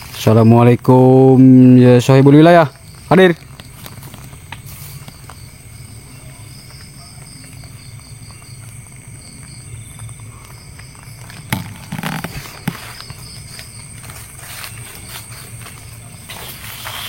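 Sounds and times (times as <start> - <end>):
insects chirping: 0.0 - 17.0
rustle: 3.2 - 5.5, 10.8 - 17.0.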